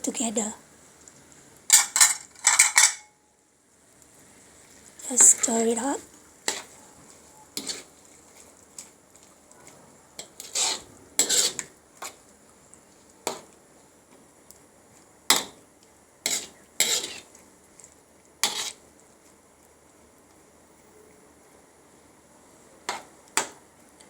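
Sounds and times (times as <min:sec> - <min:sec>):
utensil stirring sauce in a pan: 0:03.9 - 0:20.4, 0:22.6 - 0:23.8.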